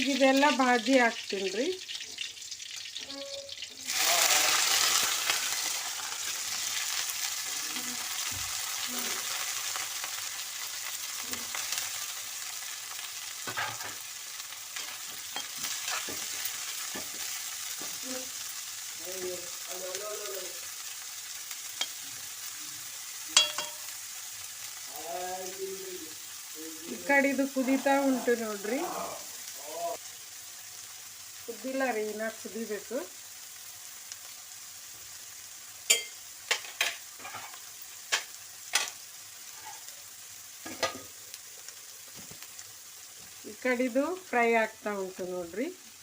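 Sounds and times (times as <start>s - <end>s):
vegetables sizzling in hot oil: 0.0s - 46.0s
spoon knocking against pan: 23.4s - 23.9s.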